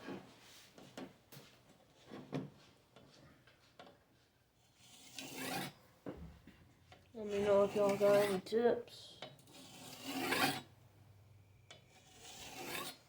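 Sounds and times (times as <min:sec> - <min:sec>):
blade sharpening strokes: 0:04.8 - 0:05.7, 0:09.5 - 0:10.6, 0:12.0 - 0:13.0.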